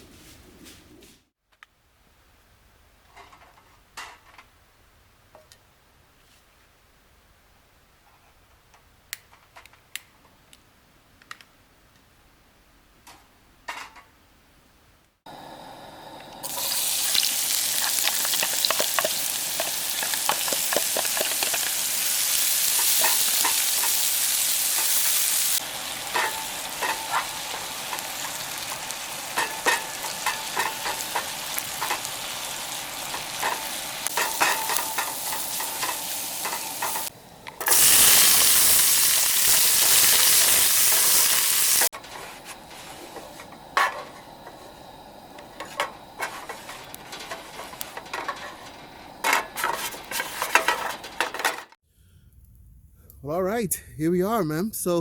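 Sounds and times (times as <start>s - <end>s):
vegetables sizzling in a pan: 15.3s - 51.4s.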